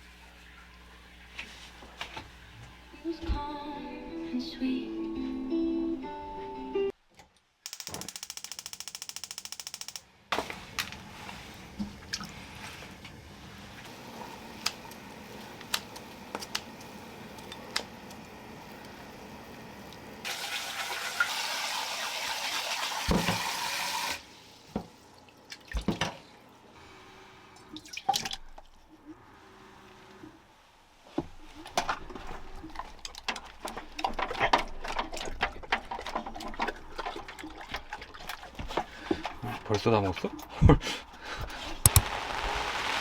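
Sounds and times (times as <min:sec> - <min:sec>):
tap water running into sink: 0:20.3 - 0:24.2.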